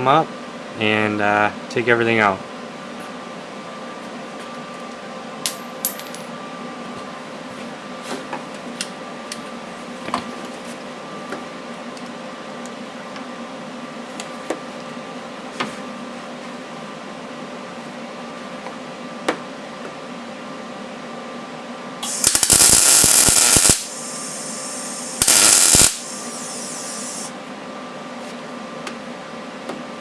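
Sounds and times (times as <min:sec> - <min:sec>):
machine hum: 0:22.0 - 0:27.3.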